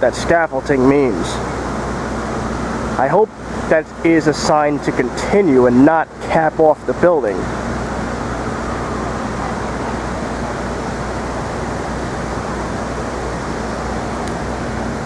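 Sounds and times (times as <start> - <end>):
city noise rush: 0.0 - 15.0
low hum: 6.8 - 15.0.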